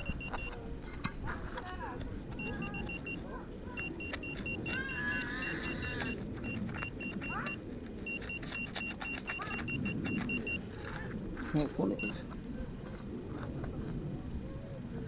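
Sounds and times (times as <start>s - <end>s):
metal detector beeping: 0.0s - 0.6s, 2.3s - 10.7s, 11.9s - 12.2s
scrapes and clicks: 3.8s - 11.5s.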